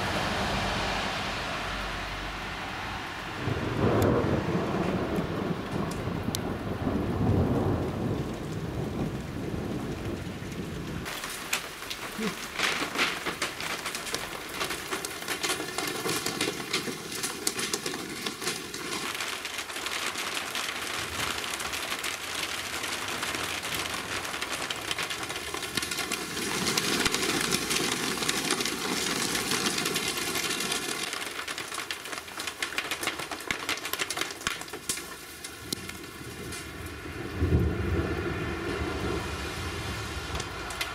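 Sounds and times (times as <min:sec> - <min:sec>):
low rumble of thunder: 0:00.0 - 0:11.1, 0:35.6 - 0:40.9
steady rain hiss: 0:00.0 - 0:40.9.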